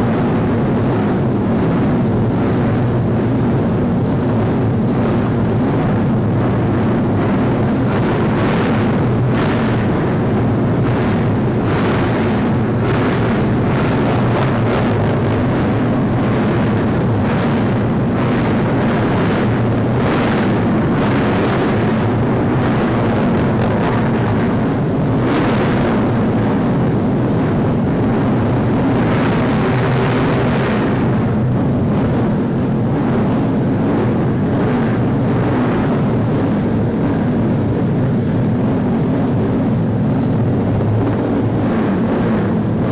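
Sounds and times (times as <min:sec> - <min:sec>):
racing motorcycle engines droning: 0:19.4 - 0:26.3.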